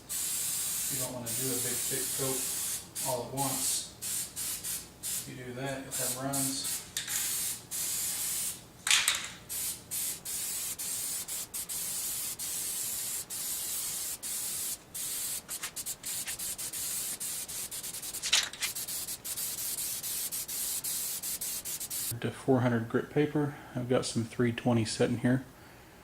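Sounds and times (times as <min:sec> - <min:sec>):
aerosol spray can hissing: 0:00.0 - 0:05.3, 0:06.0 - 0:08.6, 0:09.5 - 0:22.1.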